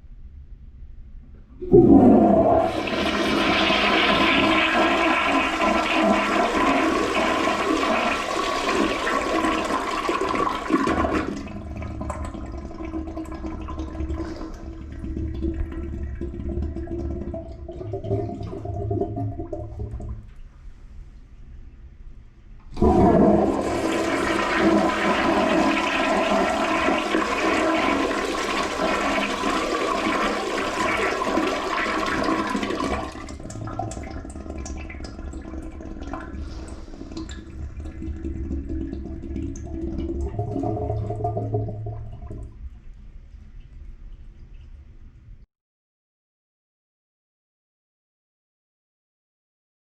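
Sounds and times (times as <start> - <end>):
toilet flushing: 1.6 - 20.2, 22.7 - 42.6
water gurgling and trickling: 1.6 - 21.0, 22.7 - 45.4.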